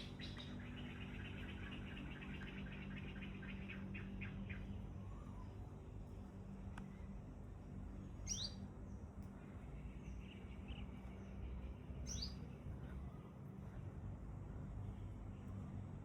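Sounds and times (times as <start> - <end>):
bird calling: 0.0 - 5.5, 8.2 - 8.6
steady low hum: 0.0 - 16.0.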